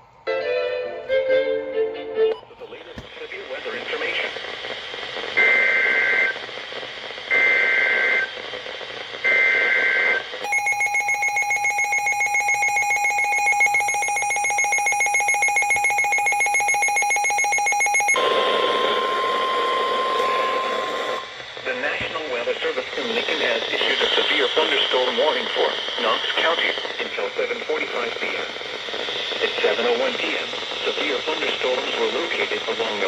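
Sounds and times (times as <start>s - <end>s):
steady weather radio alert tone: 2.3s - 33.0s
radio hiss: 2.4s - 10.5s, 18.2s - 33.0s
warbling two-tone data screech: 10.5s - 21.3s.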